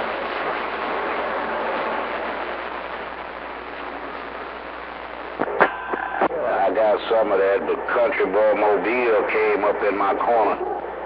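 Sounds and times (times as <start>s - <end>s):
radio static hiss: 0.0s - 11.0s
radio clicks: 4.3s - 6.4s.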